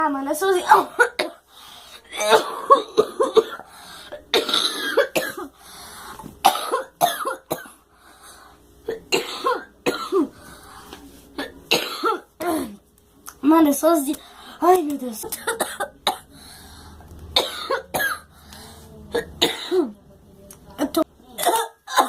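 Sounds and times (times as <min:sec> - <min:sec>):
girl coughing: 0:00.5 - 0:01.4, 0:02.0 - 0:05.6, 0:06.4 - 0:07.8, 0:08.8 - 0:10.4, 0:11.4 - 0:12.8, 0:15.3 - 0:16.3, 0:17.4 - 0:18.3, 0:19.1 - 0:20.0, 0:21.3 - 0:22.0.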